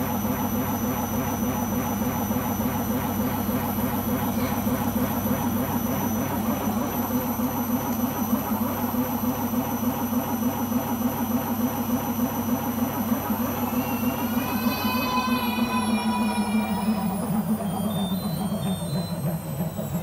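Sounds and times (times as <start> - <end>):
washing machine spinning: 0.0 - 20.0
rising whine of drum: 10.3 - 20.0.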